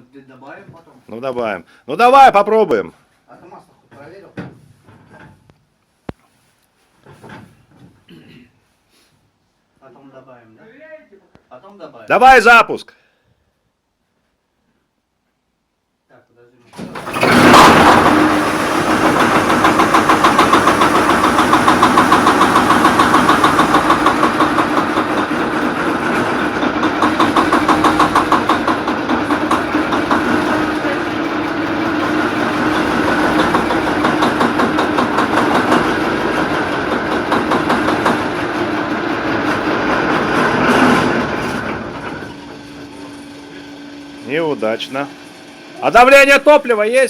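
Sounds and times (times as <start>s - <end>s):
diesel engine starting roughly: 16.8s - 43.8s
rhythmic engine knocking: 17.3s - 41.2s.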